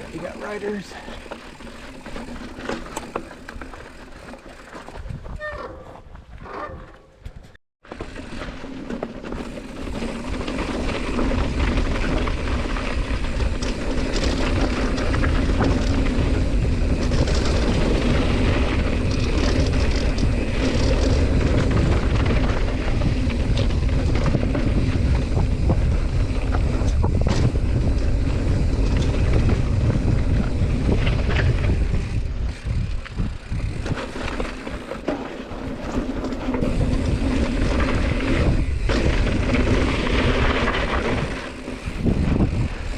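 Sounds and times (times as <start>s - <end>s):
bike rattling and clicking: 0.0s - 42.9s
tyres rumbling on dirt: 7.8s - 42.9s
wind rushing over microphone: 9.6s - 34.8s, 36.6s - 42.9s.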